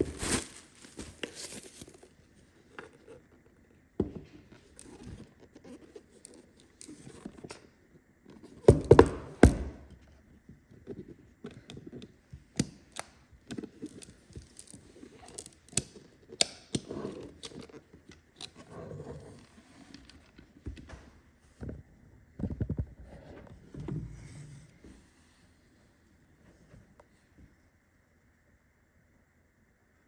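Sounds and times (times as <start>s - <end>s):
packaging rustling: 0.0s - 3.3s
box clicks and knocks: 8.6s - 10.0s.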